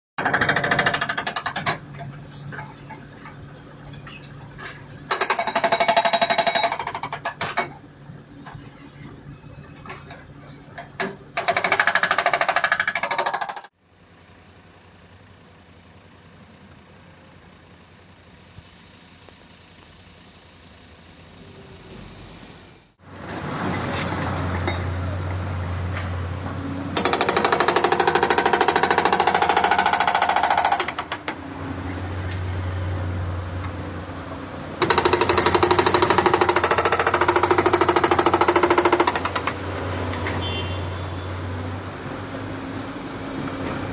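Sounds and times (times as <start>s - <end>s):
hydraulic breaker hammering: 0.2s - 2.0s, 10.9s - 13.7s, 26.9s - 31.5s, 34.8s - 40.6s
diesel engine running: 13.8s - 43.9s.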